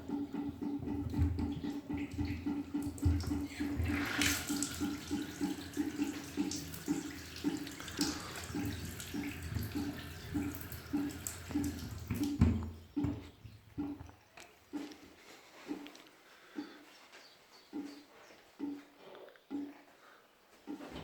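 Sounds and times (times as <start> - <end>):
water running in a sink: 0.0 - 13.2.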